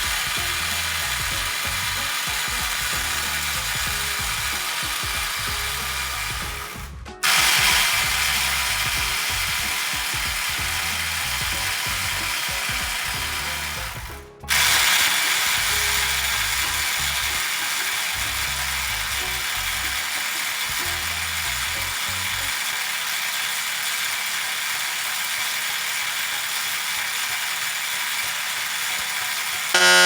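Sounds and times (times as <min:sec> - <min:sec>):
impact driver hammering: 0:00.0 - 0:17.5, 0:29.8 - 0:30.0.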